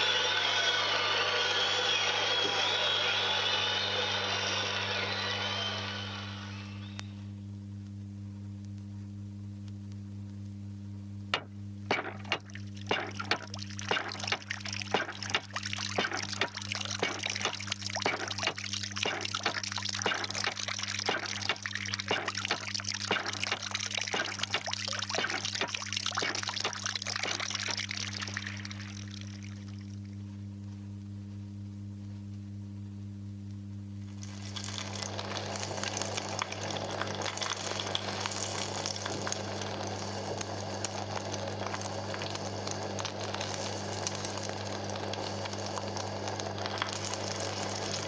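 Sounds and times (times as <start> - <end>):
low vinyl hum: 0.0 - 48.0
water splashing and pouring: 11.9 - 30.0, 34.2 - 45.6.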